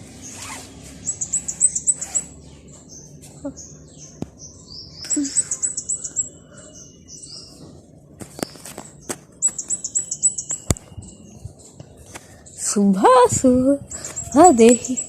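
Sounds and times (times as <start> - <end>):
small birds trilling and chirping: 0.0 - 15.0.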